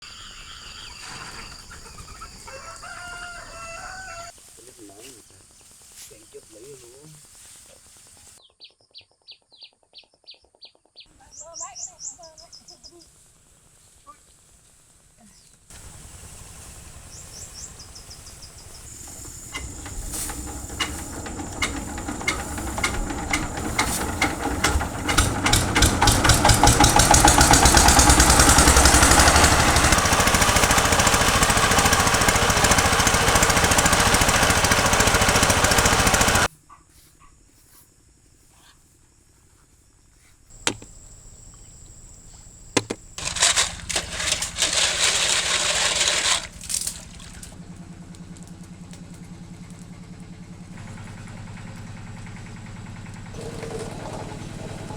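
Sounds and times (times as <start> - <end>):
small engine revving: 15.7 - 36.5, 40.5 - 54.9.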